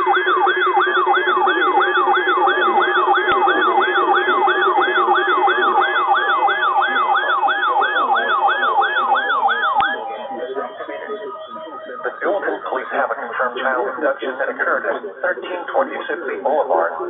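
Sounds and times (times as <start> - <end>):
electronic yelp siren: 0.0 - 15.2
steady lower tones: 0.0 - 15.4.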